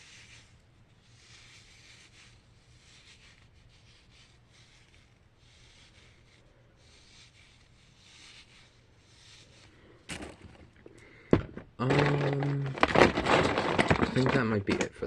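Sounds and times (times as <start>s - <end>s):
faint soft rubbing and rustling: 0.0s - 11.0s, 11.6s - 15.0s.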